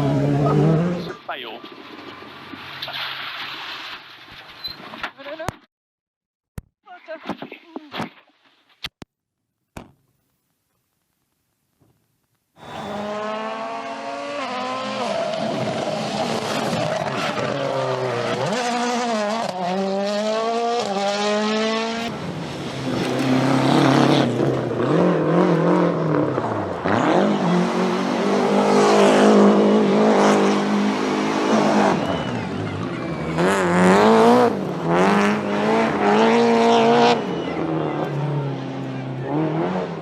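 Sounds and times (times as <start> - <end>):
rally car engines revving: 0.0 - 3.2, 12.6 - 40.0.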